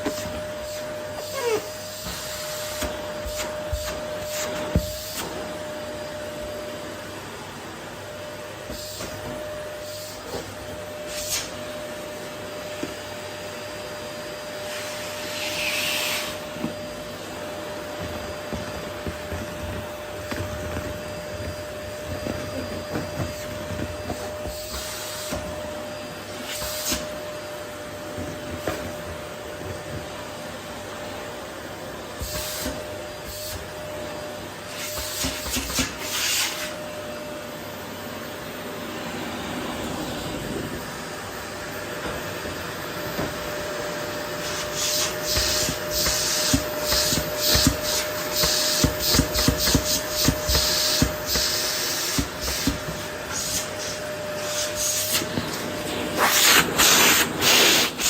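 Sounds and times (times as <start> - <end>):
vacuum cleaner running: 0.0 - 58.0
vacuum suction hissing swishes: 38.5 - 42.0.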